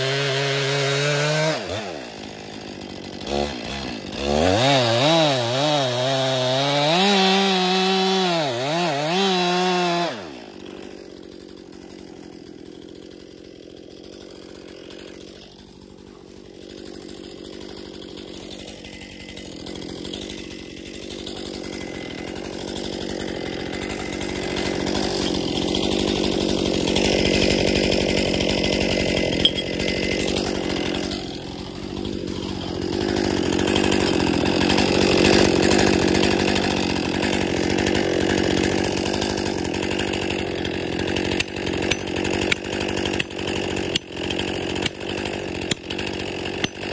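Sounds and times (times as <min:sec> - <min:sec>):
chainsaw cutting wood: 0:00.0 - 0:46.9.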